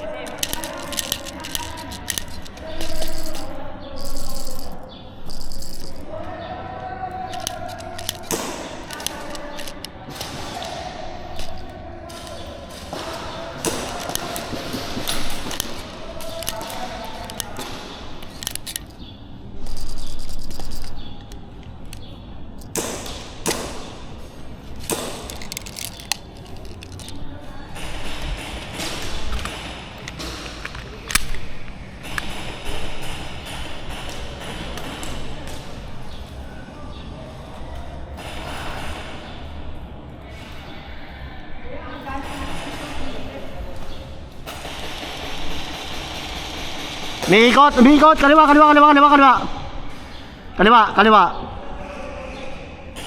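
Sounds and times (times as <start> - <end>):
faint distant voices: 0.0 - 53.0
airsoft guns firing: 7.3 - 18.8.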